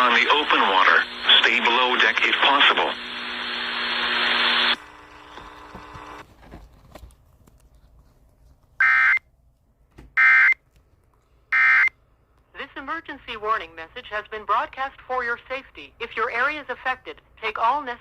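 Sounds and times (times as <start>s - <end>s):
radio static hiss: 0.0s - 6.2s.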